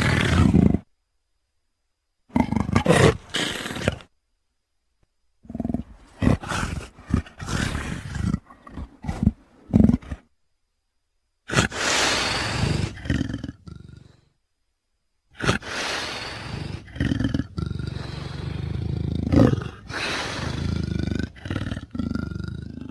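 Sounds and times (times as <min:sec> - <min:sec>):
animal roaring calls: 0:15.4 - 0:22.9.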